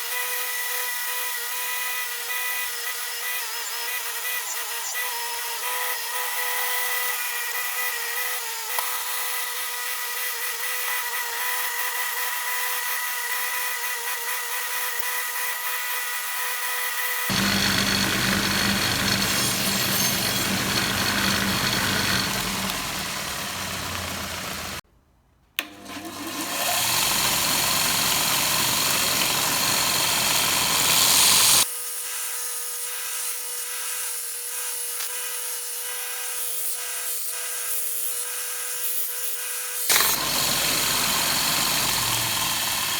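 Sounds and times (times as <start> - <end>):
power tool whining: 0.0 - 24.8, 25.6 - 31.7, 34.5 - 42.9
rough grinding noise: 17.3 - 24.8, 26.0 - 31.6, 39.9 - 42.9.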